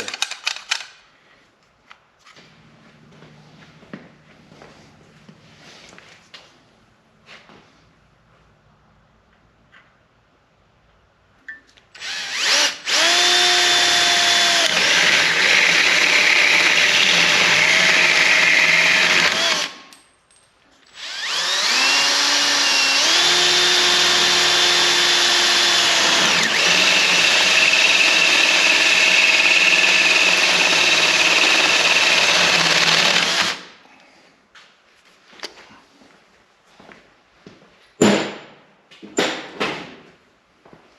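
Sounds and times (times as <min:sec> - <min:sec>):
power tool whining on sheet metal: 0:12.0 - 0:19.8, 0:21.0 - 0:33.8.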